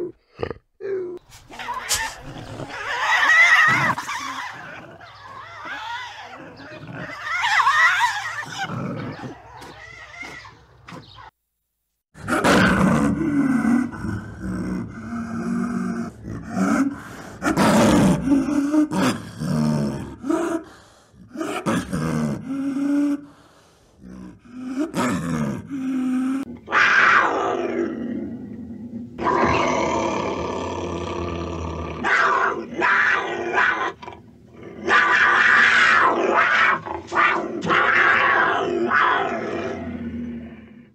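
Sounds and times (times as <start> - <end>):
cougar crying and yowling: 0.8 - 11.3, 26.5 - 28.2, 29.2 - 34.1, 34.7 - 40.0.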